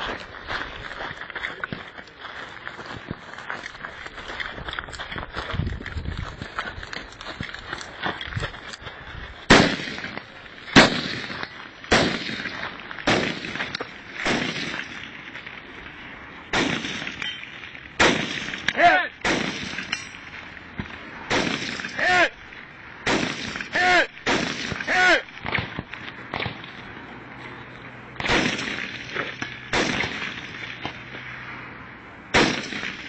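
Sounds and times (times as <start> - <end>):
rifle shots: 9.5 - 15.6, 16.5 - 22.3, 23.0 - 26.9, 28.2 - 31.4, 32.3 - 33.0.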